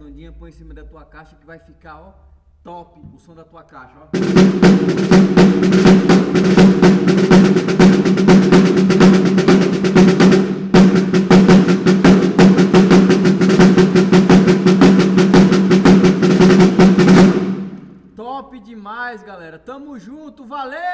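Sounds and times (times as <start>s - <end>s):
low drum ring: 4.2s - 18.0s
damped snare drum strokes: 4.2s - 18.1s.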